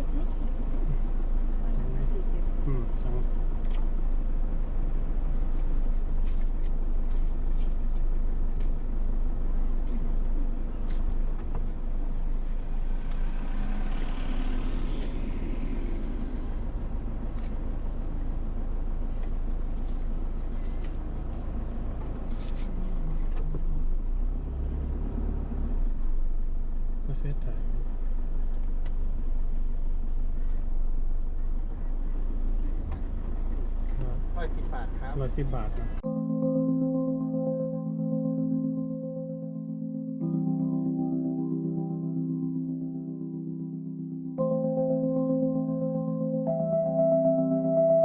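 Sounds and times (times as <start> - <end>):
car engine rumbling: 0.0 - 36.1
hiss with gliding whine: 13.2 - 16.8.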